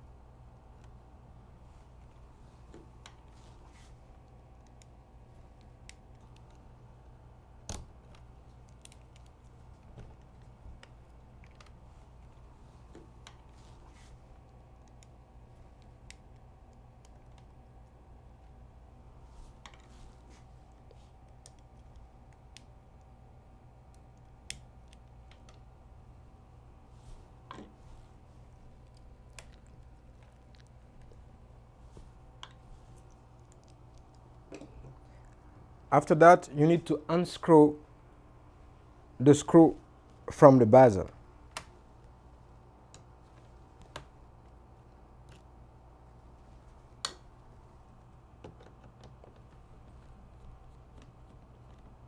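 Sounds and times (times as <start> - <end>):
low steady hum: 0.0 - 52.0.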